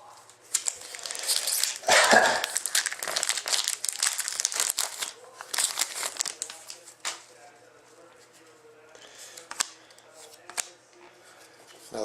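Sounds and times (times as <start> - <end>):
card pack wrapper crinkling: 0.5 - 7.2.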